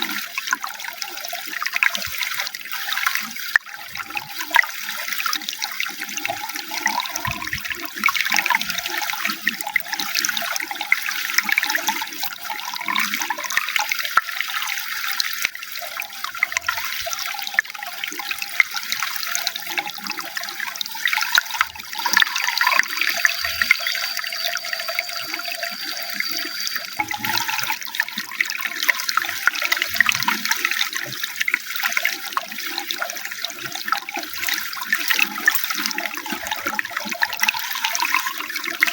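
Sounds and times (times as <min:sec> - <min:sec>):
running water splashing: 0:12.2 - 0:38.9
faint thin high tone: 0:21.3 - 0:28.0.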